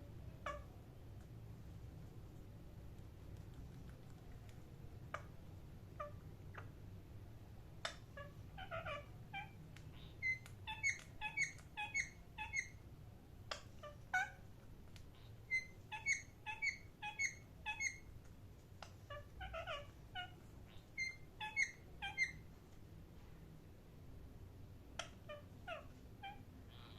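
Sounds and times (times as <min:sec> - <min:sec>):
parrot chirping: 0:00.4 - 0:00.7, 0:07.8 - 0:12.8, 0:13.5 - 0:14.4, 0:15.2 - 0:18.1, 0:19.1 - 0:22.4, 0:25.0 - 0:26.9.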